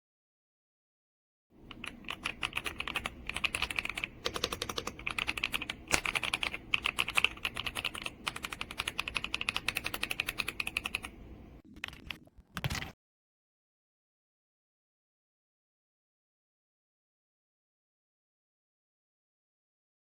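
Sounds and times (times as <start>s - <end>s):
mechanical keyboard typing: 1.6s - 13.0s.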